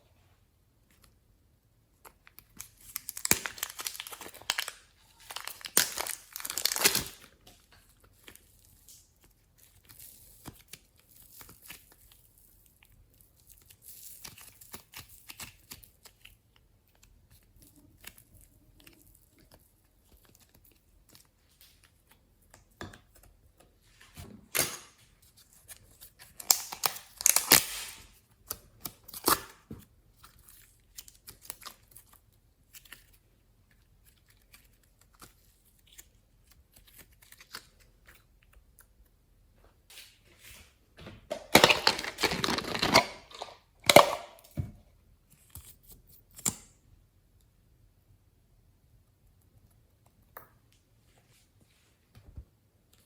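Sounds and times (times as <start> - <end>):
slime crackling and popping: 2.2 - 7.5, 26.2 - 29.5.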